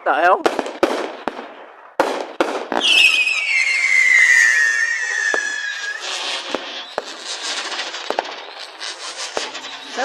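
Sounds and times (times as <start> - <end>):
firework crackling and pops: 0.3 - 10.0
whistling firework shrieking: 2.8 - 10.0.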